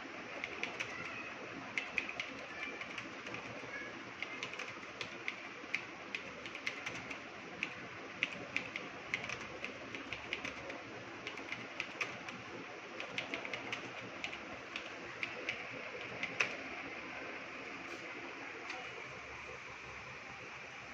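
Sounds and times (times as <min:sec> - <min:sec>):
keyboard typing: 0:00.3 - 0:16.7.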